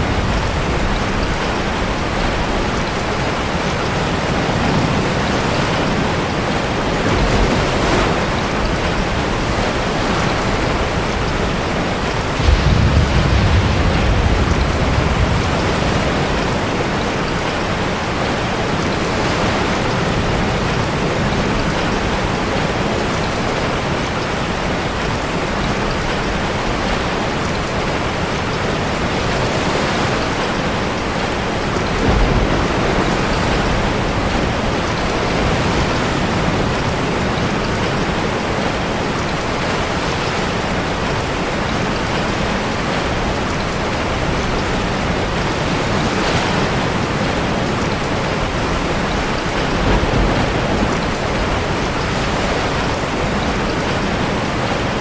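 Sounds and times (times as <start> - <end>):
heavy surf breaking in a cave: 0.0 - 55.0
steady downpour of rain: 0.0 - 55.0
deep low rumble: 12.4 - 16.8.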